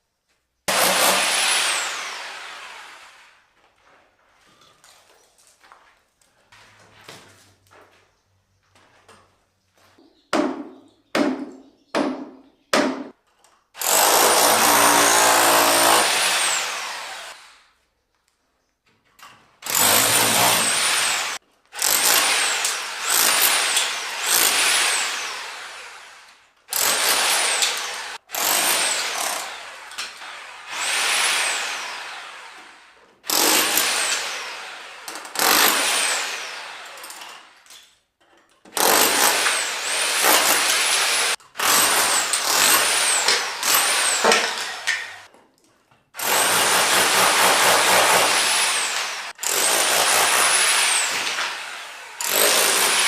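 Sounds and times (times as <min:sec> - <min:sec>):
sharp knocks: 0:10.3 - 0:13.1.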